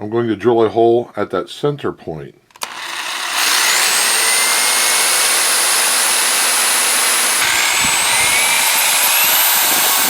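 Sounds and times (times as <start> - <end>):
electric drill boring into wood: 2.6 - 10.0.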